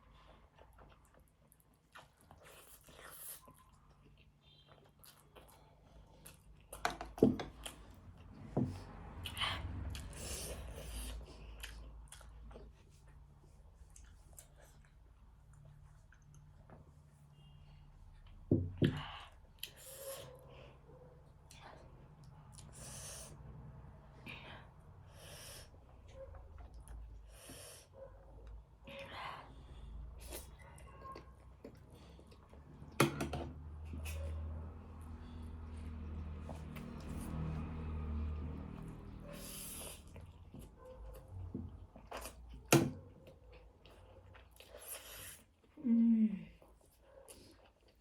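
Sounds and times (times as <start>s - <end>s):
chewing with mouth smacks: 0.0s - 17.3s, 30.2s - 33.0s, 33.6s - 45.8s, 46.6s - 48.0s.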